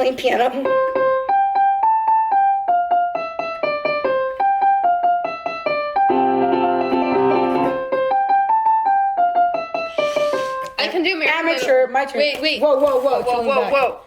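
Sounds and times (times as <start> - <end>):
piano melody: 0.0 - 12.1
clustered piano chord: 3.2 - 9.2.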